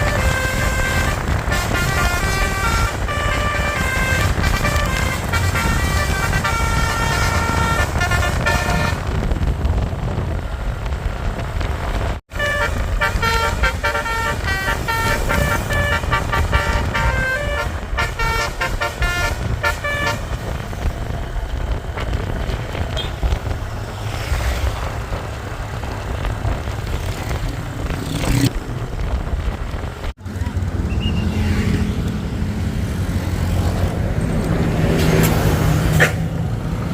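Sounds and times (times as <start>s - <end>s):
multi-tone bus horn melody: 0.0s - 9.3s, 12.3s - 20.8s, 34.9s - 36.8s
bus engine and road rumble: 0.0s - 36.9s
wind: 0.0s - 36.9s.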